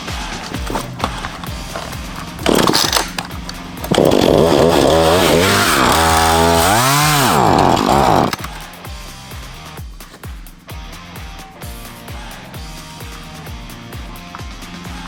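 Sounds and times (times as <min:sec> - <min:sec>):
chainsaw revving and cutting: 0:00.0 - 0:08.7.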